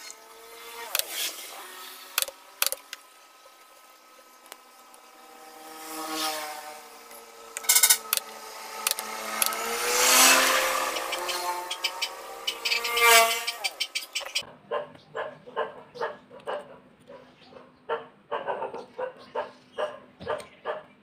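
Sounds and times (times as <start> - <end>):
sharp clicks: 2.1 - 3.0, 7.6 - 9.6
vehicle engine passing by: 3.2 - 14.4.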